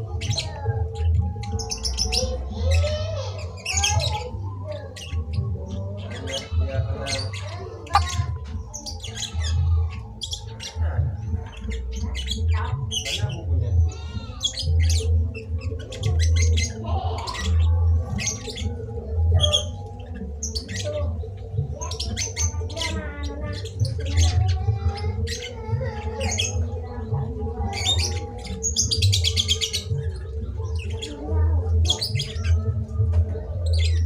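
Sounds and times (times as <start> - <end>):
small birds chirping: 0.0 - 34.0
doves cooing: 3.4 - 12.2.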